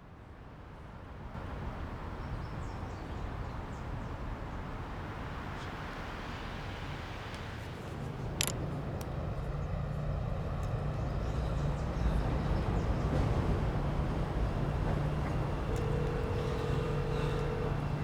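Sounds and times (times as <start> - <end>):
vehicle engine rumble: 7.4 - 18.0.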